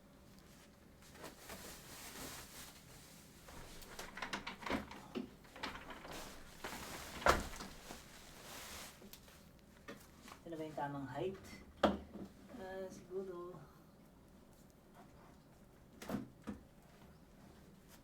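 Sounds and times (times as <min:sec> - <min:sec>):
rustling and scraping: 0:00.2 - 0:10.9.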